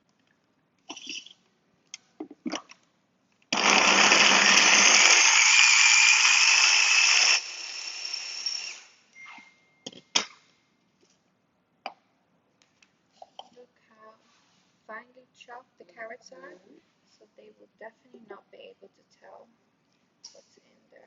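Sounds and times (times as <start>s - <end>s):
electric food chopper running: 3.6s - 8.9s.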